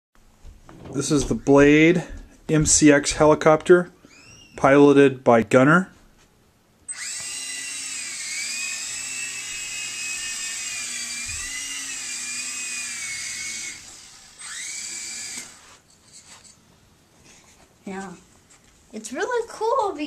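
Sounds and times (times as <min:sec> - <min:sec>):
toy helicopter motors whining: 0:06.9 - 0:16.5.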